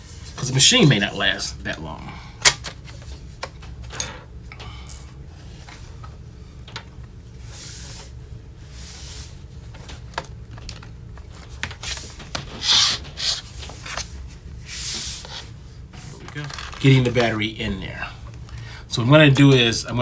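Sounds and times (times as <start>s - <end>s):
battery rubbing and scraping: 11.7s - 14.2s.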